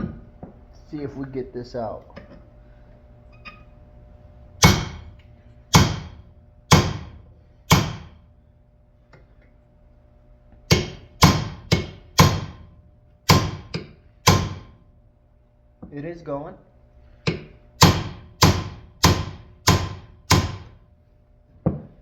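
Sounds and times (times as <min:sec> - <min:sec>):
hammer striking steel punch: 0:04.6 - 0:08.2, 0:10.7 - 0:14.8, 0:17.2 - 0:20.8.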